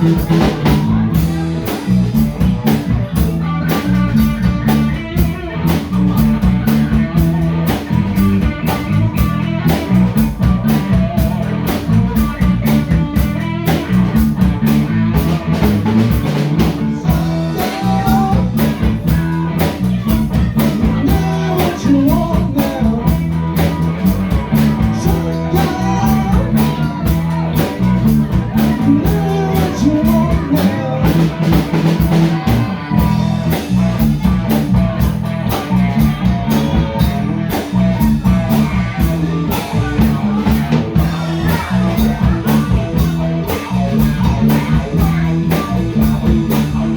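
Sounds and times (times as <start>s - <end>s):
bass guitar: 0.0s - 46.9s
drum kit beat: 0.0s - 46.9s
electric guitar: 0.0s - 46.9s.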